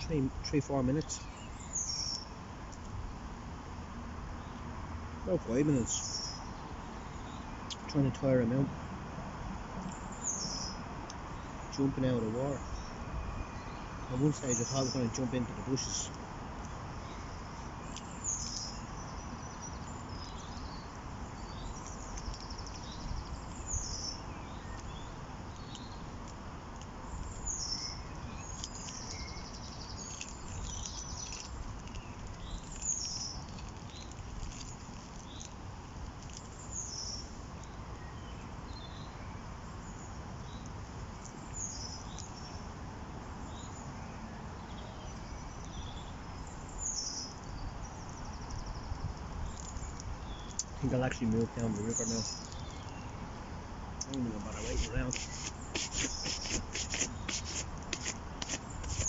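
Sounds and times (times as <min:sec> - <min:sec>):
birds chirping: 0:05.3 - 0:08.9, 0:09.9 - 0:16.2, 0:43.4 - 0:53.3, 0:54.0 - 0:59.0.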